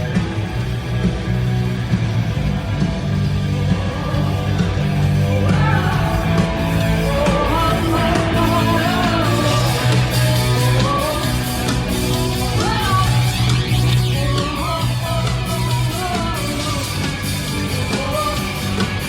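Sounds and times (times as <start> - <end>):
bass guitar: 0.0 - 19.0
distorted electric guitar: 0.0 - 19.0
drums: 0.0 - 19.0
person singing: 3.8 - 19.0.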